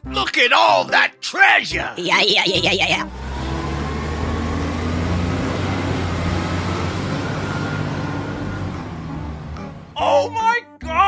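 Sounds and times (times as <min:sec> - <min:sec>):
heavy vehicle engine rumbling: 0:02.8 - 0:10.0.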